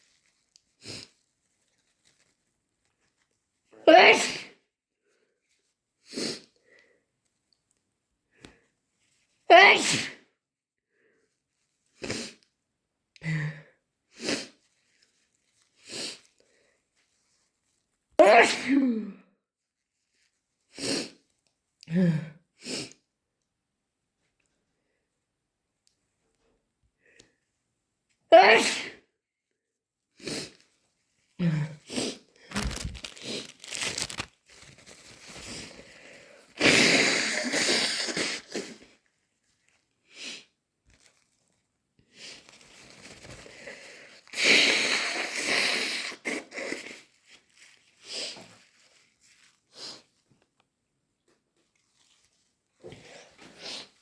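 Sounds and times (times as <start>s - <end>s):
person blowing nose: 6.1s - 6.5s, 15.8s - 16.2s, 20.8s - 21.2s, 31.9s - 34.3s, 36.6s - 38.9s, 44.3s - 47.1s
breathy sounds: 32.5s - 34.3s.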